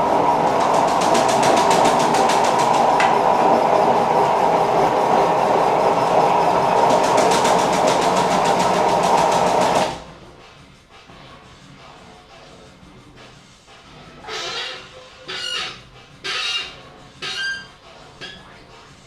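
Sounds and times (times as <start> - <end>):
machine running with rapid rattle: 0.0 - 10.3.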